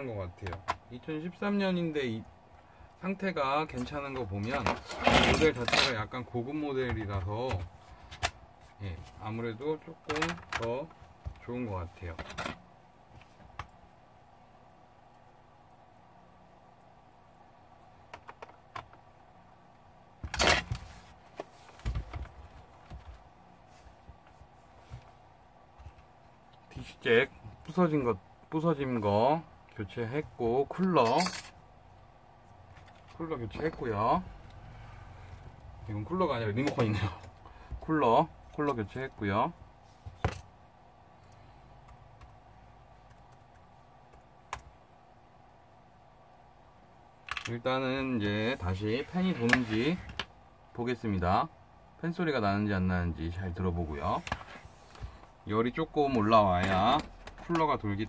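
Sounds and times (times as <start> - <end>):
low steady hum: 0.0 - 58.0.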